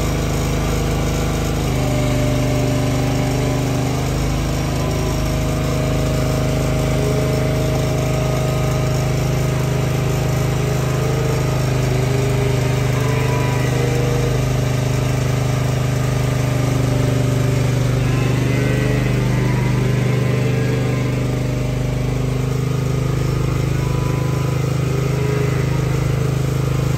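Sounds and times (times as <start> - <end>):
machine motor running: 0.0 - 26.9.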